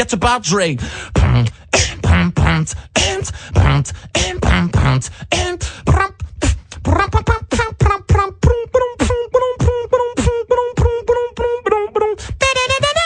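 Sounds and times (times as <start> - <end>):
person beatboxing: 0.0 - 13.0.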